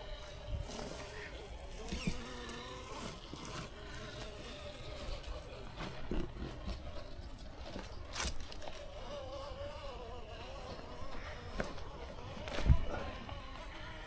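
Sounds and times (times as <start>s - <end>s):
small electric motor whining: 0.0s - 14.0s.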